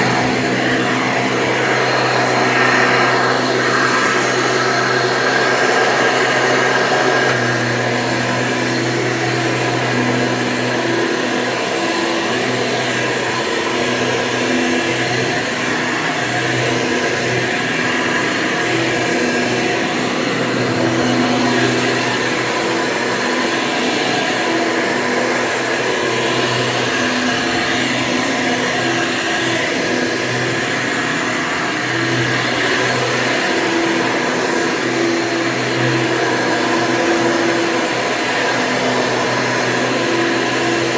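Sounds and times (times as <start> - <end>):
vacuum cleaner running: 0.0 - 40.9.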